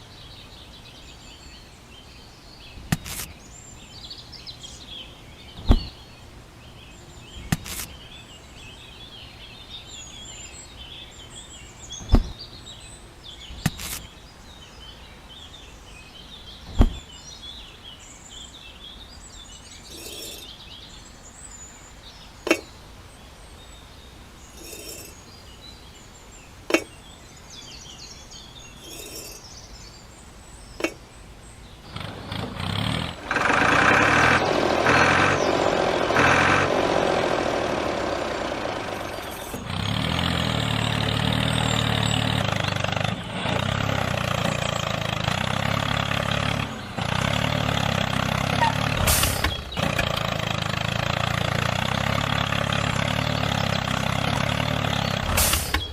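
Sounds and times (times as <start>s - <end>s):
birds chirping: 0.0s - 55.9s
sharp knocks: 12.0s - 12.4s, 16.7s - 17.1s
loud motor running: 31.9s - 55.9s.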